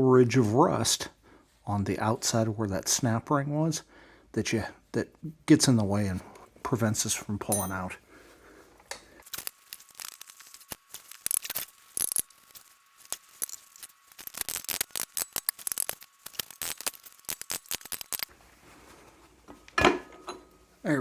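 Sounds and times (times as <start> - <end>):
metallic clicks and clinks: 7.5 - 7.9, 9.3 - 18.3.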